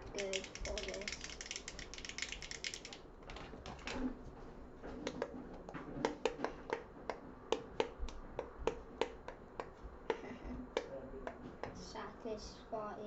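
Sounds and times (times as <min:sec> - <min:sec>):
fidget controller buttons clicking: 0:00.0 - 0:03.0.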